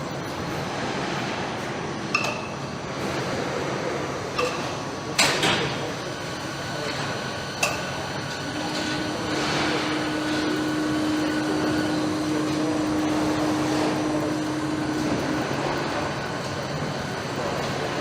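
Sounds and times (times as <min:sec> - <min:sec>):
machinery noise: 0:00.0 - 0:18.0
steady hum: 0:00.0 - 0:18.0.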